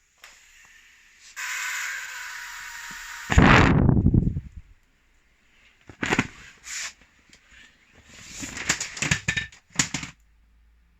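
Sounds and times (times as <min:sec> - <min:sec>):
vinyl rustling and crinkling: 0:05.7 - 0:10.2.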